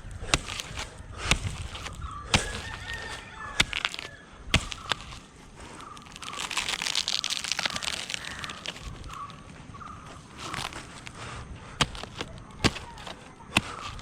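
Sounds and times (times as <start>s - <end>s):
dry crackling and rustling: 0.0s - 14.0s
sharp chopping knocks: 0.3s - 5.2s, 11.8s - 14.0s.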